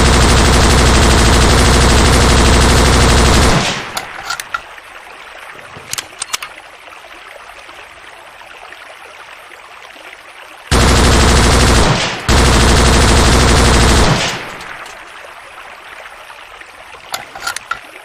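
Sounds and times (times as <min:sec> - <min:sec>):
machine gun automatic fire: 0:00.0 - 0:04.0, 0:10.7 - 0:14.8.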